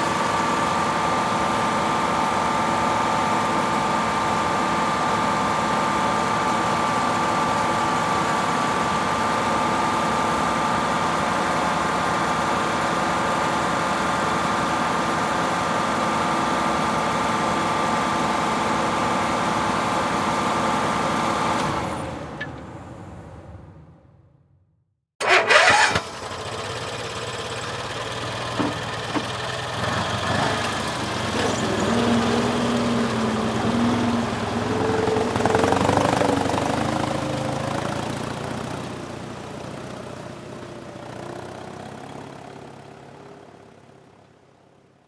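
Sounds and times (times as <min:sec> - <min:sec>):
vehicle engine starting: 0:25.2 - 0:42.1.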